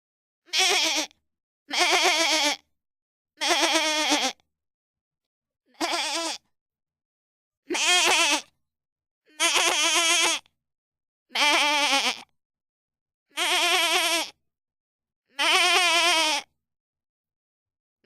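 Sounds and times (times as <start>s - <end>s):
goat bleating: 0.5s - 2.6s, 3.4s - 4.4s, 5.8s - 6.4s, 7.7s - 8.5s, 9.3s - 10.5s, 11.3s - 12.3s, 13.4s - 14.4s, 15.4s - 16.5s.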